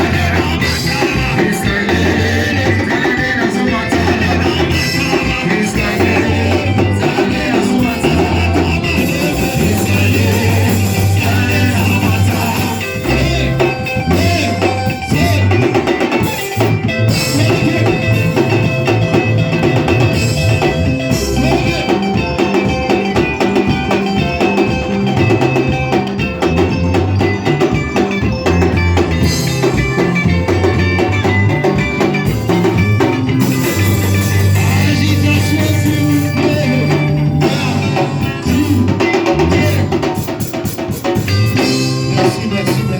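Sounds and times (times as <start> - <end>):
person singing: 0.0 - 24.7, 32.2 - 40.5, 41.5 - 42.9
bass: 0.0 - 42.9
drum kit: 0.0 - 42.9
guitar: 0.0 - 42.9.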